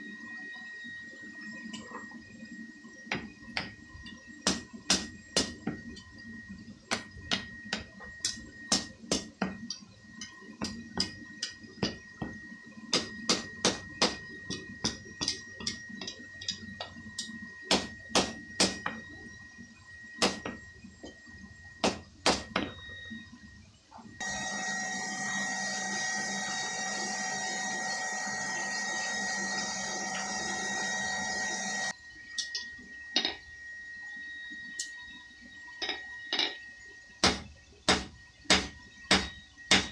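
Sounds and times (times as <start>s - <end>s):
hammer striking hot steel on anvil: 4.4s - 5.8s, 6.9s - 9.6s, 10.6s - 15.8s, 17.7s - 19.0s, 20.2s - 20.6s, 21.8s - 22.7s, 37.2s - 39.9s.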